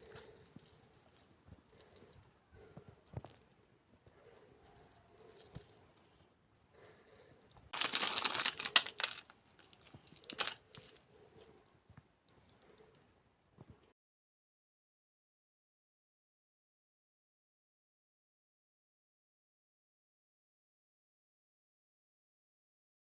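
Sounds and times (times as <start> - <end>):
packaging rustling rattle: 7.8 - 11.1.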